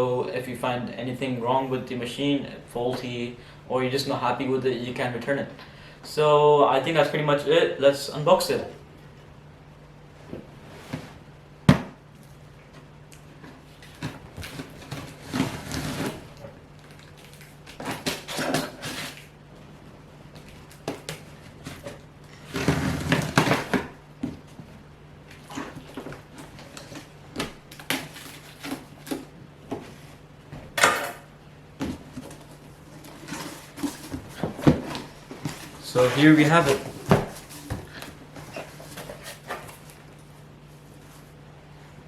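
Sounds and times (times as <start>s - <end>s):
cardboard box rustling and scraping: 13.9s - 16.4s, 21.5s - 23.8s, 31.9s - 40.0s.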